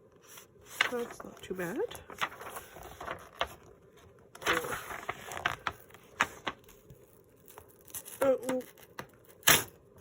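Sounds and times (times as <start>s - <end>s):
paper rustling and sliding: 0.1s - 7.2s.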